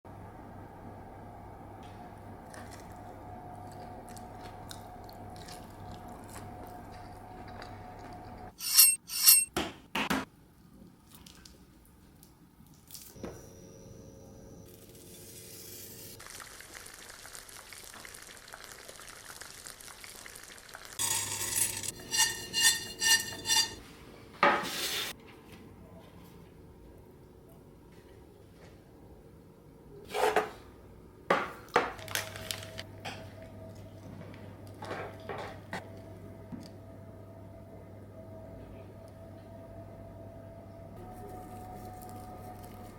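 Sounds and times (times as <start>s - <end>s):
food sizzling: 14.9s - 23.8s
utensils clinking on dishes: 21.0s - 23.8s.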